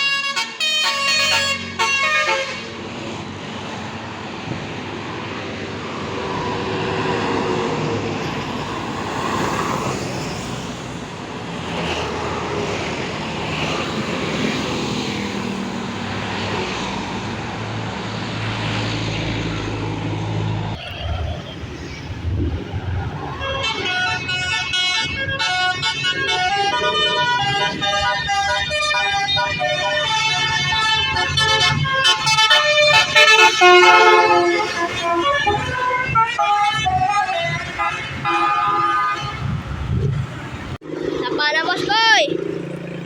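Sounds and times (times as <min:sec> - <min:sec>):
bus musical horn tune: 0:00.0 - 0:02.8, 0:23.4 - 0:39.7
bus engine and road noise: 0:00.0 - 0:43.0.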